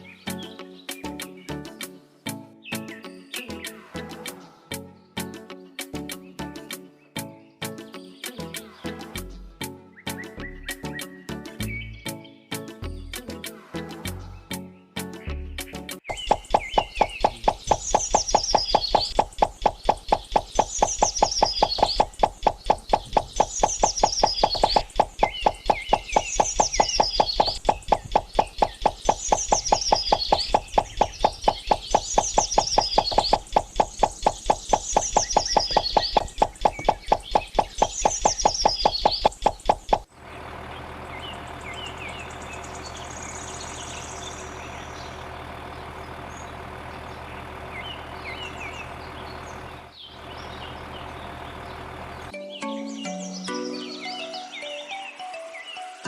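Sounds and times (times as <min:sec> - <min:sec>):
rapid even knocking: 0:16.1 - 0:40.1.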